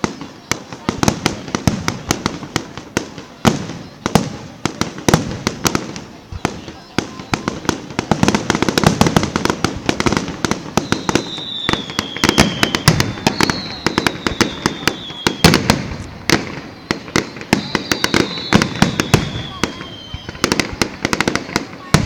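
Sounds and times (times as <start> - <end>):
fireworks bangs and crackles: 0.0 - 22.0
firework high whistle: 6.6 - 22.0.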